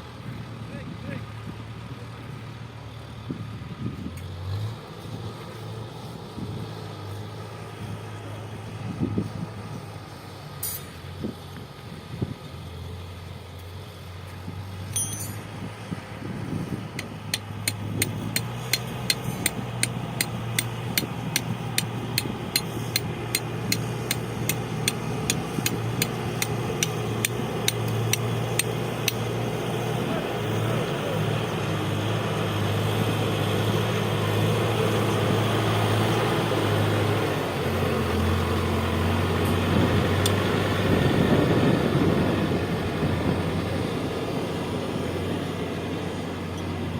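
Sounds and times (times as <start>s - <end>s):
heavy machine engine running: 0.0s - 46.9s
rapid regular clicking: 17.0s - 29.2s.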